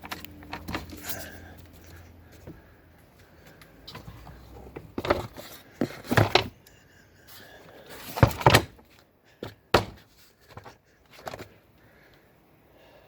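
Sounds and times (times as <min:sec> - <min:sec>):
loud knocks and clunks: 0:09.4 - 0:10.1.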